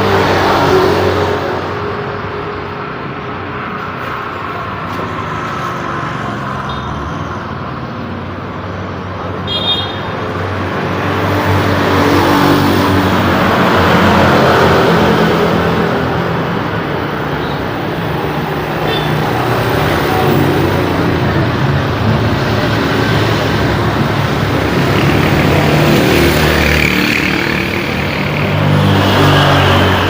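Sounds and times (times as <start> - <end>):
road traffic rumble: 0.0 - 30.0
heavy vehicle passing: 10.4 - 30.0.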